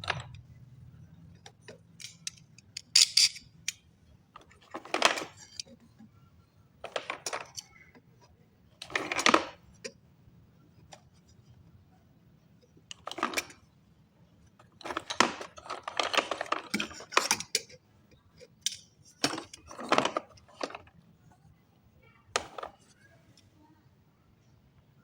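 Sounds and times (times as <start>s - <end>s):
pencils clicking and clattering: 1.3s - 3.8s, 4.4s - 5.7s, 6.8s - 7.9s, 8.8s - 9.9s, 12.9s - 13.6s, 14.6s - 17.8s, 18.4s - 21.0s.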